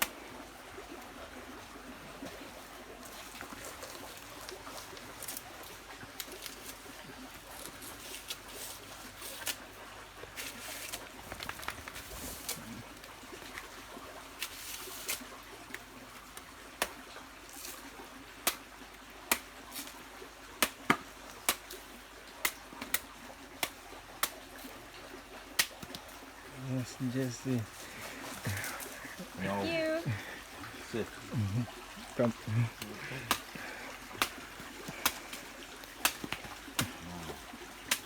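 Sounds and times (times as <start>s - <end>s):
stream trickling: 0.0s - 38.0s
machete chopping coconut: 18.4s - 18.7s, 19.3s - 19.5s, 20.6s - 21.8s, 22.4s - 24.5s, 25.6s - 26.0s, 32.8s - 37.1s.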